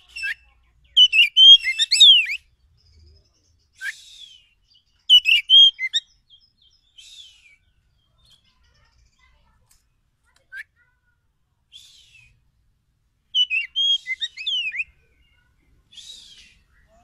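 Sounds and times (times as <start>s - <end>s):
bird singing whistled notes: 0.0s - 8.1s, 11.7s - 12.5s, 13.3s - 17.0s.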